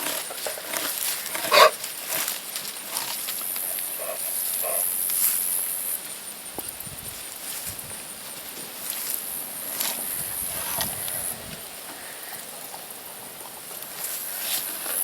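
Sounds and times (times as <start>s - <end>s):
animal calling: 0.0s - 1.9s, 2.9s - 5.0s.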